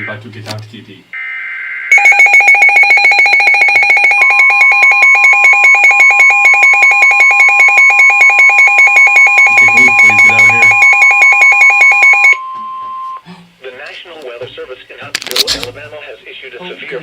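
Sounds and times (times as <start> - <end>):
fast-pulsing electronic alarm: 1.2 - 12.4
steady warning alert tone: 1.9 - 13.2
digital data screech: 8.0 - 12.3.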